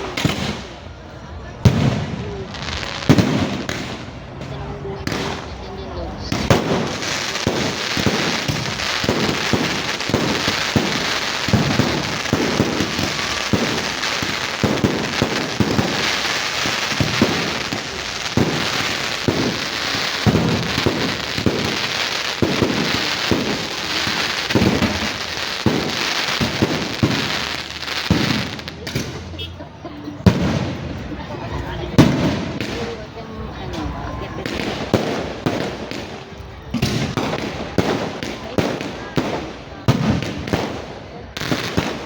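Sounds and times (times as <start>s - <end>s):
firework crackle: 0.0s - 1.0s, 1.6s - 29.6s, 30.2s - 42.0s
firework bangs: 0.0s - 42.0s.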